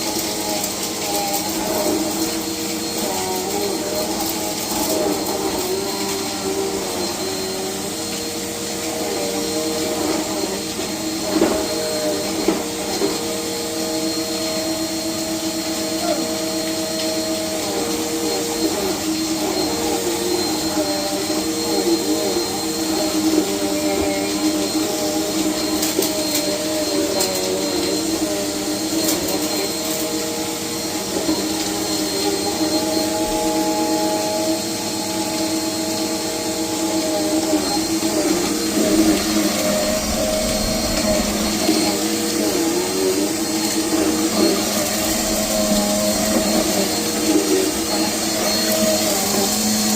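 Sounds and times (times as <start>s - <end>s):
vacuum cleaner running: 0.0s - 49.9s.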